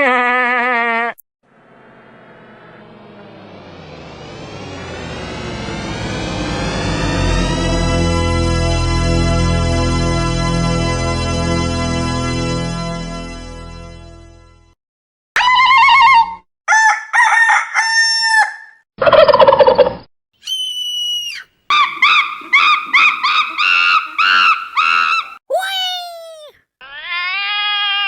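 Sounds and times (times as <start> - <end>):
high whistle: 20.4 - 21.5.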